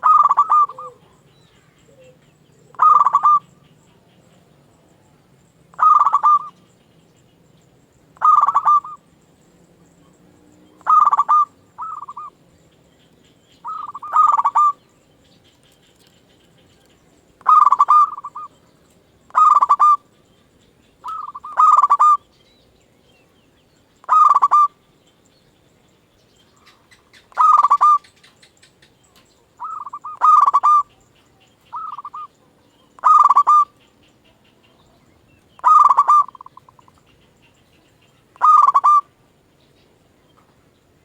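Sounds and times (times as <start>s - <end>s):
doves cooing: 0.0s - 4.3s, 5.7s - 6.6s, 8.2s - 9.1s, 10.8s - 12.4s, 13.6s - 14.8s, 17.4s - 18.6s, 19.3s - 20.2s, 20.9s - 22.2s, 24.0s - 24.8s, 26.6s - 28.6s, 29.4s - 35.0s, 35.6s - 37.4s, 38.2s - 39.2s.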